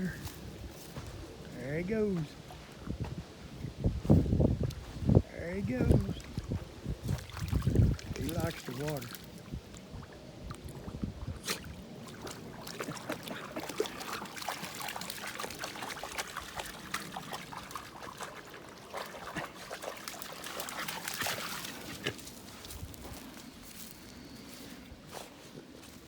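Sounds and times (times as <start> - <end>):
water trickling and dripping: 6.0 - 22.0
dog splashing in water: 6.2 - 22.8.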